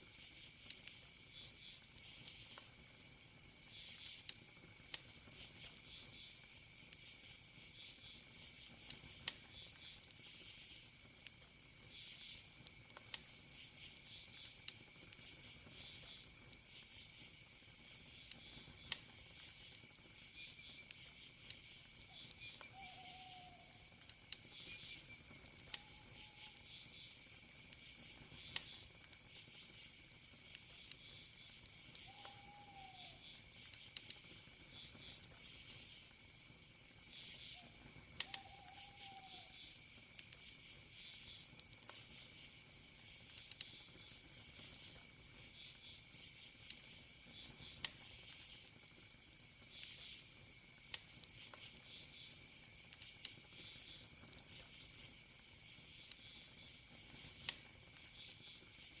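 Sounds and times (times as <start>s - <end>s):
campfire crackling and popping: 0.0s - 59.0s
cricket trill: 0.0s - 59.0s
pulsing insect chirps: 13.5s - 36.2s, 37.0s - 48.6s, 49.6s - 50.3s.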